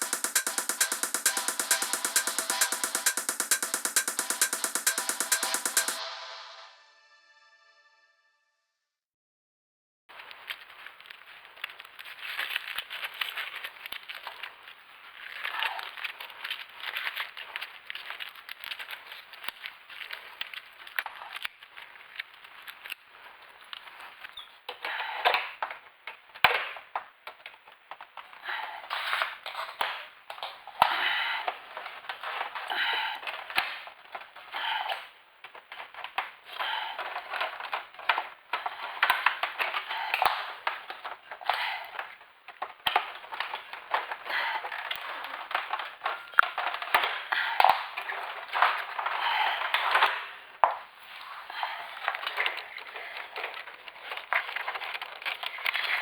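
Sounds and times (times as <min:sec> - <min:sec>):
sharp clicks and knocks: 0:00.0 - 0:06.0.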